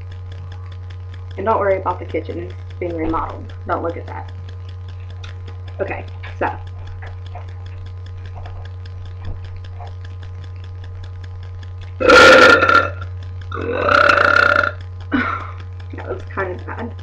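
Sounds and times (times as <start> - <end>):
girl burping: 12.0 - 13.0, 13.6 - 15.6.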